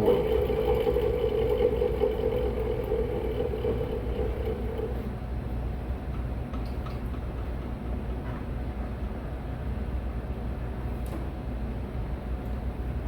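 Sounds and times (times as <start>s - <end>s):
blower motor grinding whine: 0.0s - 5.2s
low equipment rumble: 0.0s - 5.2s.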